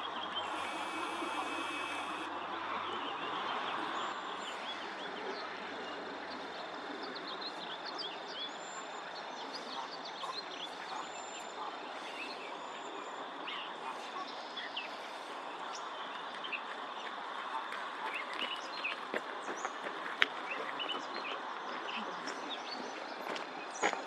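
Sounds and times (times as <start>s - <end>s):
songbirds chirping: 0.0s - 24.0s
background hiss: 0.4s - 2.3s
thin high whistles: 0.4s - 2.3s.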